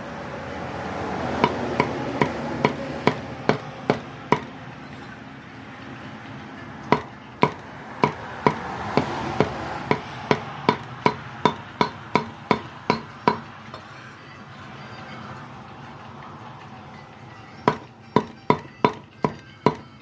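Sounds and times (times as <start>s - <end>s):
cleaver chopping on cutting board: 1.4s - 4.5s, 6.9s - 13.5s, 17.7s - 19.8s.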